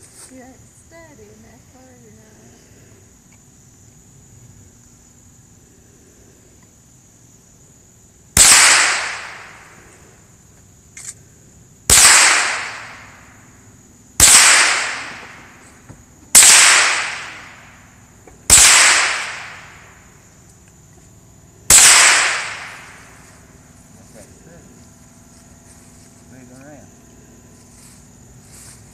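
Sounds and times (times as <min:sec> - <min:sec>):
rifle shots: 0:08.4 - 0:09.7, 0:11.9 - 0:13.1, 0:14.2 - 0:15.5, 0:16.3 - 0:17.6, 0:18.5 - 0:19.9, 0:21.7 - 0:23.1.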